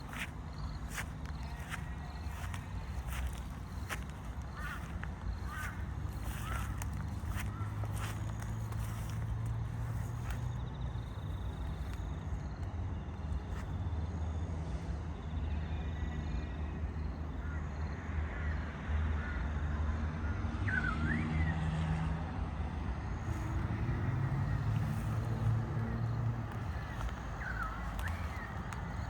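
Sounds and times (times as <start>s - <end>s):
bird calls: 0.0s - 10.4s, 23.3s - 29.0s
steady low rumble: 0.0s - 11.7s.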